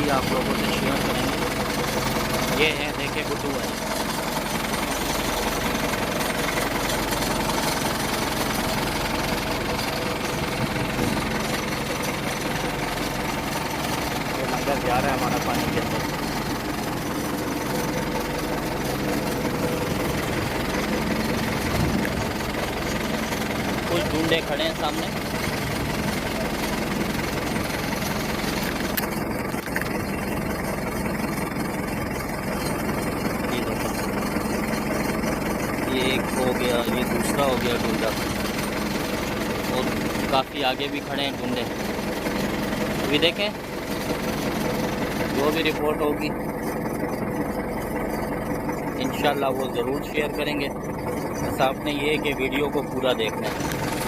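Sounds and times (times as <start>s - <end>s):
boat engine knocking: 0.0s - 54.0s.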